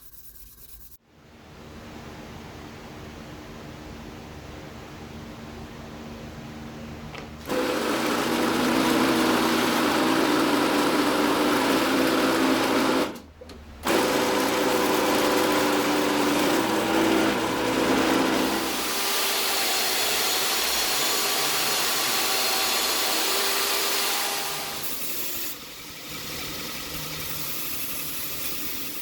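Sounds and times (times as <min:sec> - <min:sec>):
power tool running: 0:07.4 - 0:13.2, 0:13.8 - 0:29.0.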